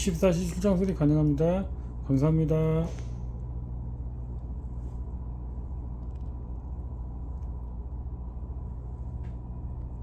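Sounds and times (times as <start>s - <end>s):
low mechanical hum: 0.0s - 10.0s.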